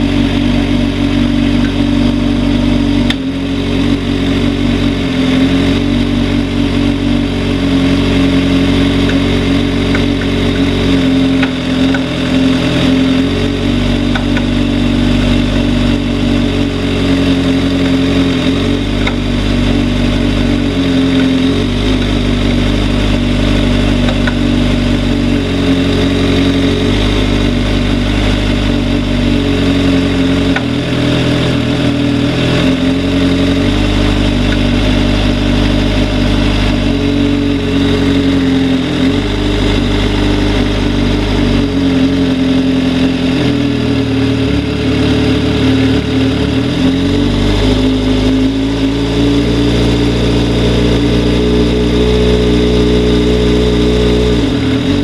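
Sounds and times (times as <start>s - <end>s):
engine knocking: 0.0s - 55.0s
motorcycle engine running: 0.0s - 55.0s.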